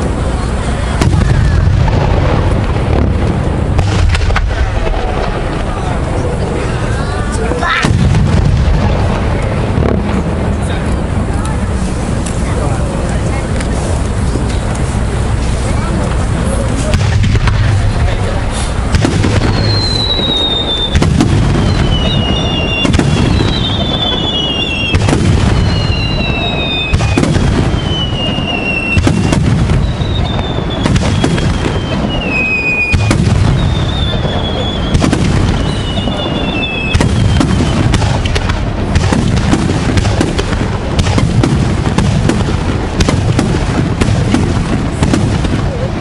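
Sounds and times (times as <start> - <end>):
fireworks booms and crackles: 0.0 - 46.0
falling firework whistles: 16.4 - 40.4.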